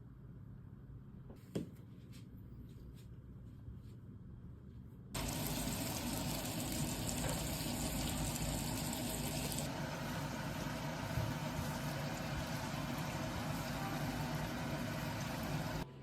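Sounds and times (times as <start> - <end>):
kitchen tap running: 5.2 - 15.8.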